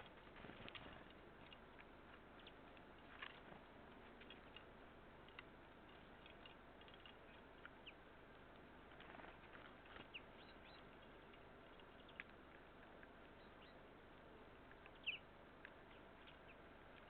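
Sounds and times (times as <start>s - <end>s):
small songbirds chirping: 0.0s - 17.0s.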